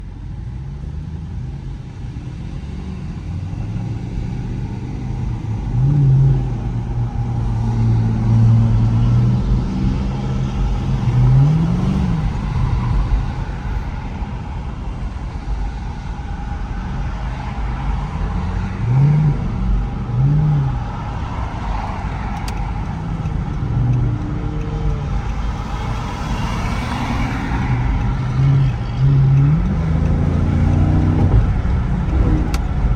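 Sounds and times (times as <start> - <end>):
car engine revving on downshifts: 2.6 - 13.7, 23.6 - 32.9.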